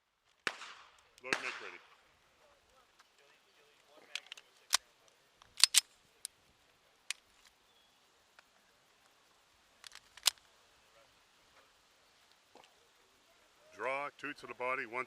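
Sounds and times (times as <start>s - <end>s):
pistol loading metallic clicks: 4.1s - 4.8s, 5.4s - 5.9s, 9.8s - 10.4s.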